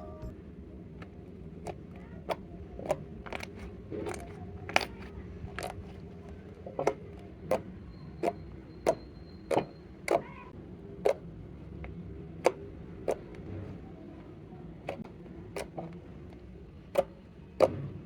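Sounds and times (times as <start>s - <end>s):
low steady hum: 0.0s - 0.4s.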